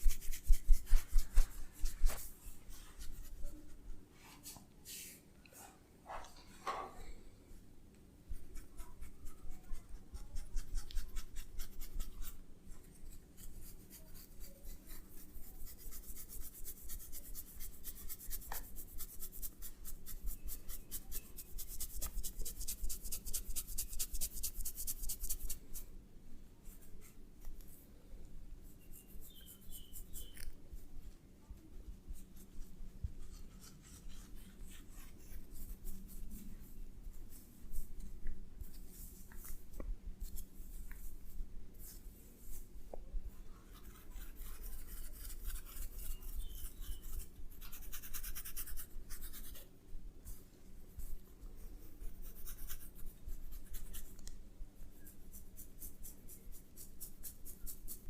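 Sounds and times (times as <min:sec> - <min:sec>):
hands rubbing and scratching: 0:00.0 - 0:05.7, 0:13.1 - 0:25.8, 0:28.7 - 0:31.2, 0:31.8 - 0:42.7, 0:43.6 - 0:49.6.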